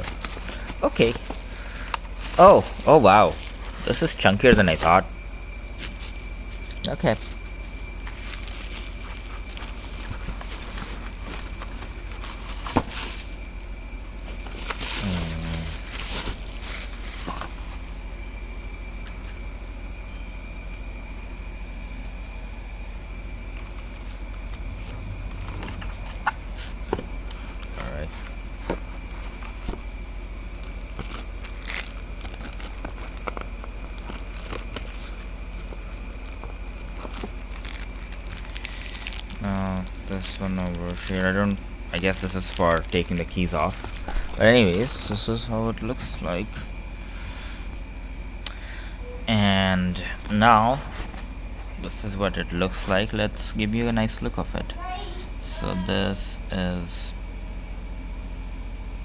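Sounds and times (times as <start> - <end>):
plastic and paper crinkling: 0.0 - 5.1, 5.8 - 13.5, 14.2 - 18.0, 30.5 - 46.5, 52.6 - 53.2
packaging rustling: 0.0 - 18.0, 23.6 - 46.2
low electrical hum: 0.0 - 59.0
short low pitched sound: 24.4 - 27.3.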